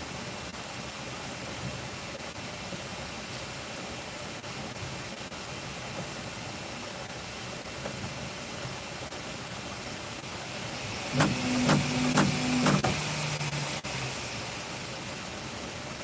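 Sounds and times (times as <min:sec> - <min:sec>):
printer fan hiss: 0:10.2 - 0:15.0
motors humming: 0:10.3 - 0:14.5
sharp clicks: 0:11.1 - 0:13.6.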